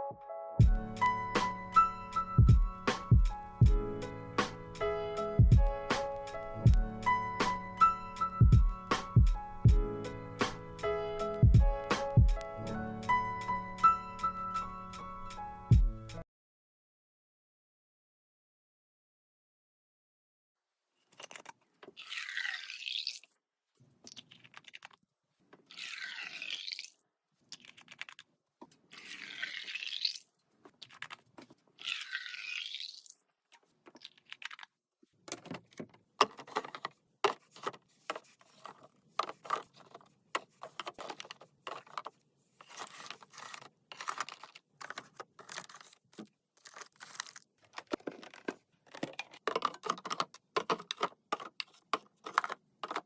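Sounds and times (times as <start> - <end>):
packaged snacks clicking and tapping: 24.1 - 25.0, 27.5 - 28.8, 30.7 - 31.5, 33.9 - 53.0.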